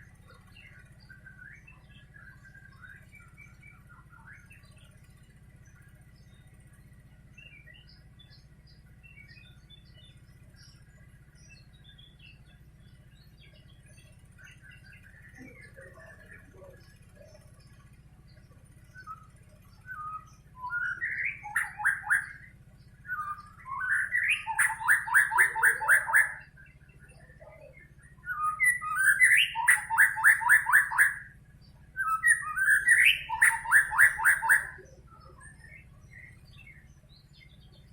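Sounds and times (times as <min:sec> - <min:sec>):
bird singing whistled phrases: 0:18.9 - 0:31.4, 0:32.0 - 0:37.5.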